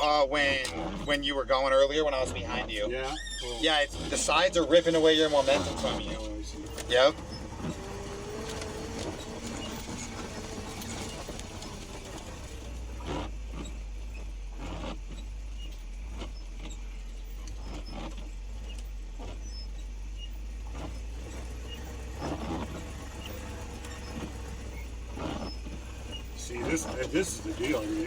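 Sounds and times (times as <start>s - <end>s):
vehicle engine rumbling: 0.0s - 28.0s.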